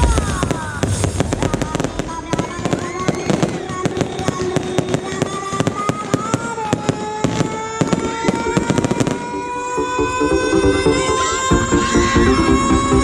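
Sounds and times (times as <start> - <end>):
fireworks bangs and crackles: 0.0 - 10.9
sustained tones: 8.7 - 13.0.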